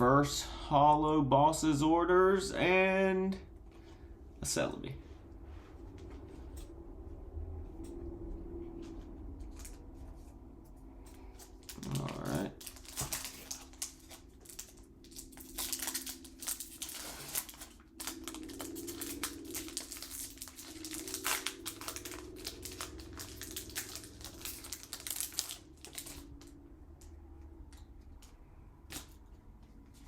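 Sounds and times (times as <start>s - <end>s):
foil wrapper crinkling: 11.4s - 26.5s.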